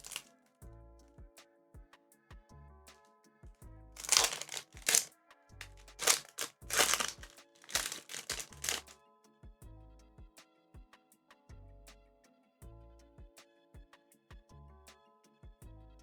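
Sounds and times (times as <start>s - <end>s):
foil pack crinkling: 0.0s - 0.3s, 4.0s - 8.9s
soft background music: 0.0s - 16.0s.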